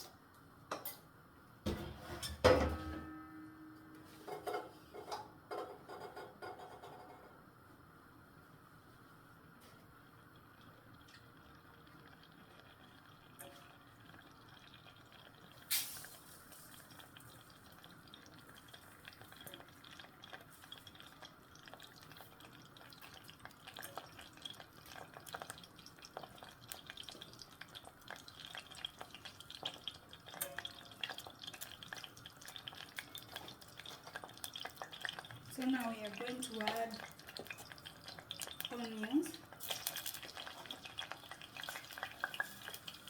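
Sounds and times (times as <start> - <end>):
oil crackling and popping: 9.6 - 43.0.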